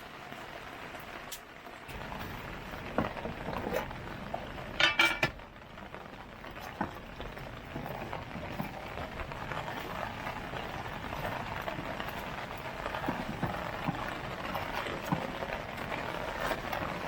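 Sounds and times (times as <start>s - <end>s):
metal cookware clinking: 4.8s - 5.4s.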